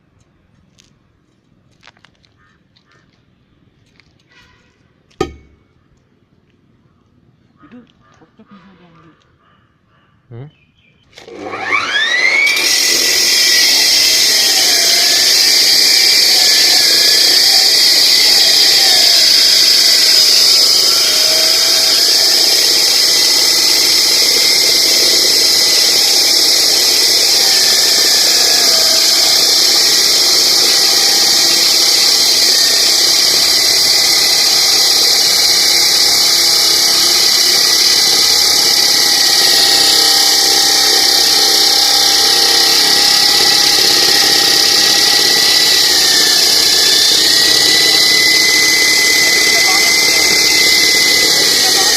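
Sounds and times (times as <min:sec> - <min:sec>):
concrete saw whining: 0:05.2 - 0:05.8, 0:11.1 - 0:51.9.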